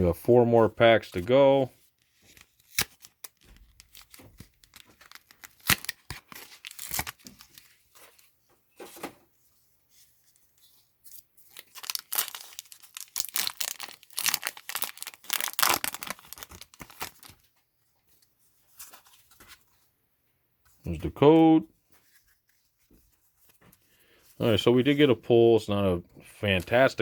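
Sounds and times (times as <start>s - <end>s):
foil wrapper tearing and crinkling: 2.3s - 7.7s, 11.5s - 17.4s.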